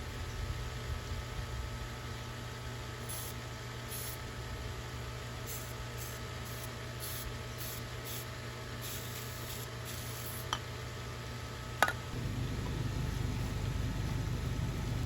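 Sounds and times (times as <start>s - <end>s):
pool pump hum: 0.0s - 15.0s
hissing spray bursts: 3.0s - 4.2s, 5.5s - 10.5s
low rumble: 12.2s - 15.0s.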